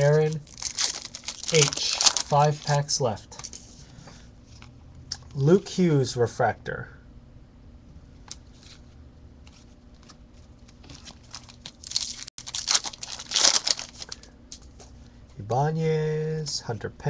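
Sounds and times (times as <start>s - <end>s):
wrapper ripping and crinkling: 0.0s - 3.0s, 10.6s - 14.3s.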